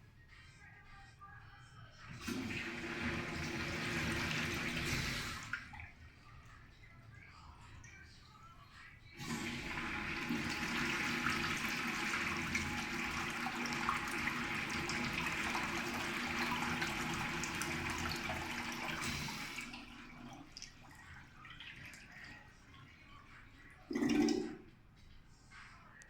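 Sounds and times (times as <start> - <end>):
urinal flushing water rush: 2.1 - 5.8, 9.2 - 22.4, 23.9 - 24.6.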